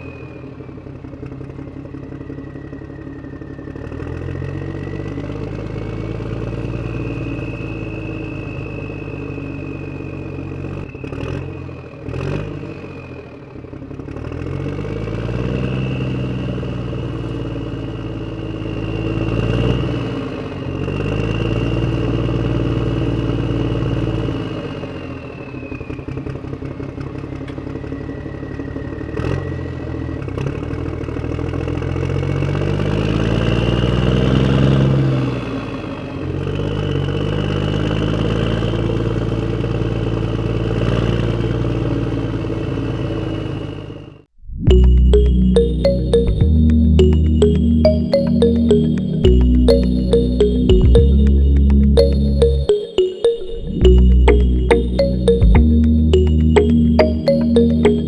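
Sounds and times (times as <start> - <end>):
thin high tone: 44.7 - 58.0.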